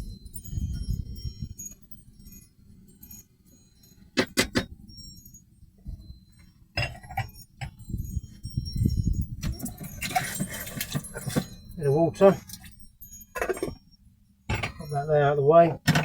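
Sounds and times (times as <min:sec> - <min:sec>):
metal and glass clinking: 0:06.0 - 0:13.9, 0:14.5 - 0:16.0
rustling handling noise: 0:09.4 - 0:12.8.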